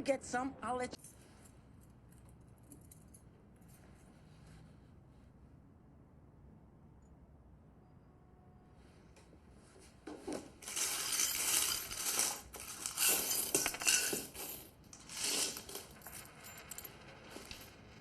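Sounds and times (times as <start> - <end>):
small metal objects clinking: 10.6 - 18.0.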